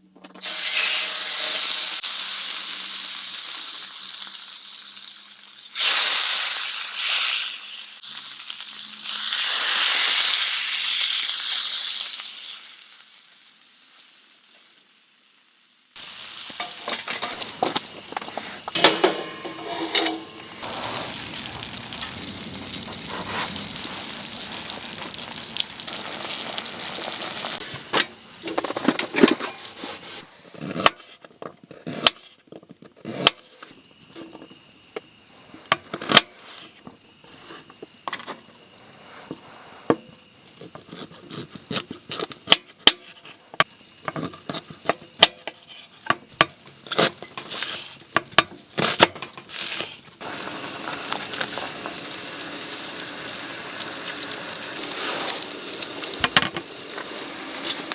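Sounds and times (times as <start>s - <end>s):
steady hiss: 0.4s - 12.2s, 16.0s - 30.4s, 42.3s - 57.9s
crinkling and clicks of handling: 16.5s - 22.2s.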